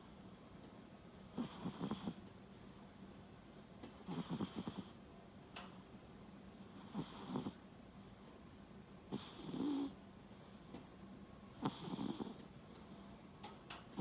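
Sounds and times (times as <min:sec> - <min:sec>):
cat snoring: 0:01.2 - 0:02.2, 0:04.0 - 0:05.0, 0:06.8 - 0:07.6, 0:09.1 - 0:10.0, 0:11.6 - 0:12.4.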